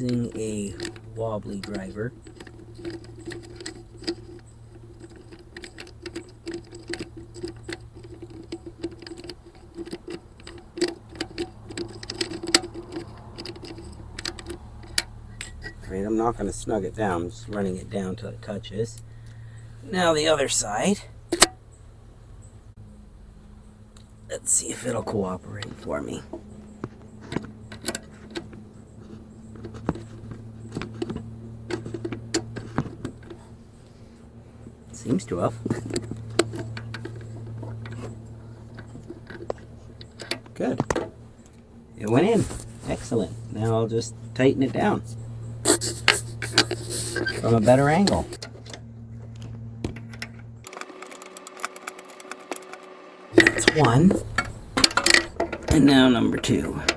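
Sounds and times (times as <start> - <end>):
hand ratchet clicking: 0.0 - 15.8, 50.1 - 56.9
low hum: 0.0 - 56.9.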